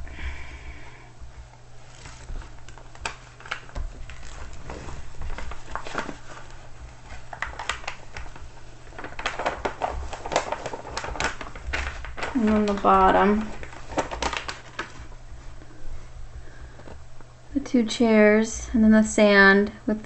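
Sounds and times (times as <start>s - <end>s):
canvas and plastic sheet rustling: 1.3s - 17.2s.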